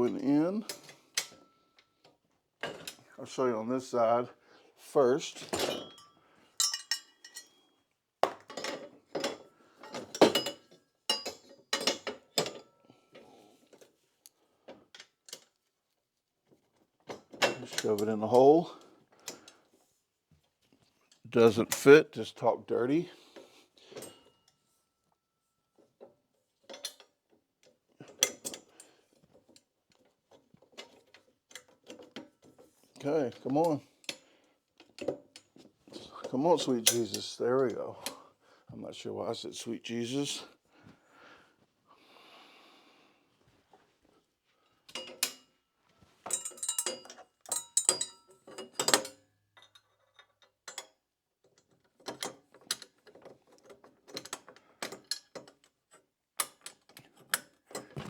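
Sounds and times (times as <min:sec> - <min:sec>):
metal fittings clicking and clinking: 0:06.6 - 0:07.5.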